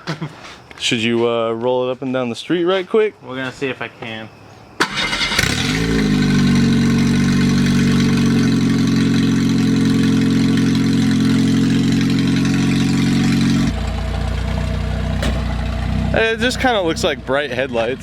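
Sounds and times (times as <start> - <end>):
car engine idling: 4.9 - 18.0.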